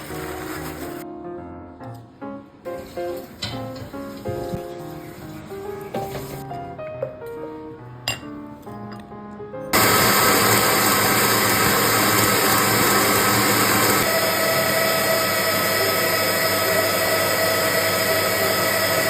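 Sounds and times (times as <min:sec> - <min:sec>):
electric mixer whining: 0:09.8 - 0:19.0.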